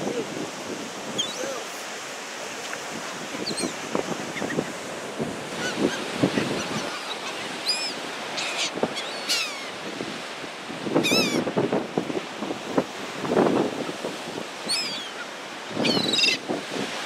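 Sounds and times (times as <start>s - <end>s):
surf washing: 0.0s - 17.0s
wind: 0.0s - 17.0s
seagulls calling: 1.1s - 1.5s, 3.4s - 4.8s, 5.5s - 9.8s, 11.0s - 11.4s, 14.6s - 16.4s.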